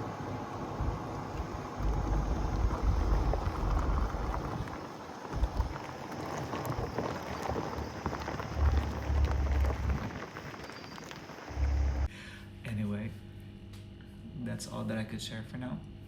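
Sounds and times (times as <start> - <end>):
wind buffeting microphone: 0.0 - 10.7.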